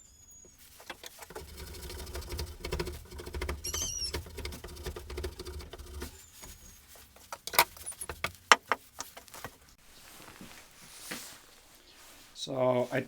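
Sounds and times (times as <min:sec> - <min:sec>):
tool scraping wood: 0:00.7 - 0:09.7
sharp taps and knocks: 0:00.8 - 0:09.6.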